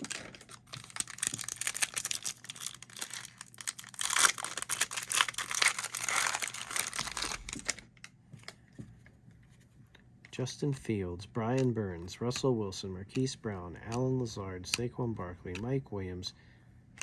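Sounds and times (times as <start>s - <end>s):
cellophane wrapper crinkling and tearing: 0.0s - 8.0s.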